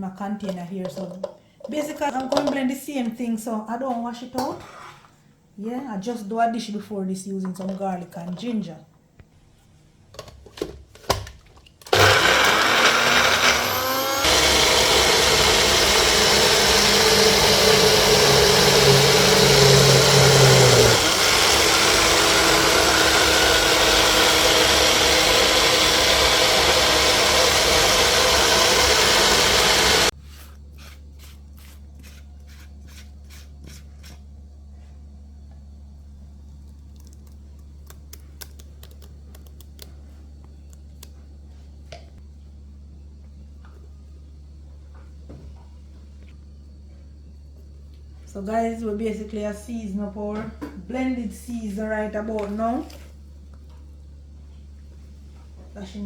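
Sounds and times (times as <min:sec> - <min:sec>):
electric blender running: 0:11.9 - 0:30.2.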